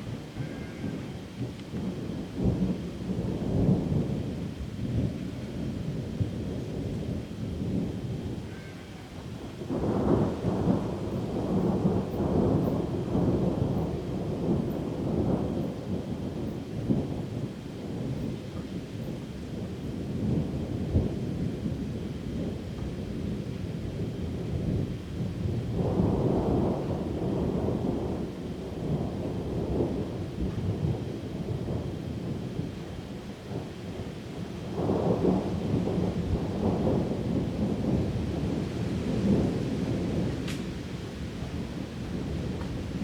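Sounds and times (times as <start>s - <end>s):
heavy rain hiss: 0.0s - 43.0s
thunder rumbling: 0.0s - 43.0s.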